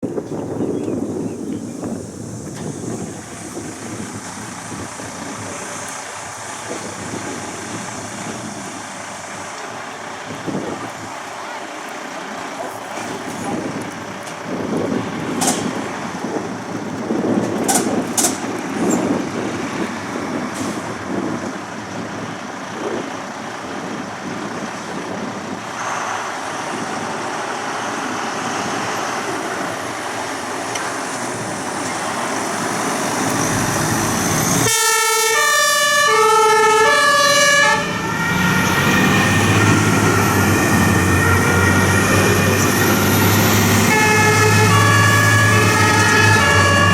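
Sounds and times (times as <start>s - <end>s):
fire engines running: 0.0s - 46.9s
two-tone emergency horn: 34.6s - 40.3s, 40.9s - 46.9s.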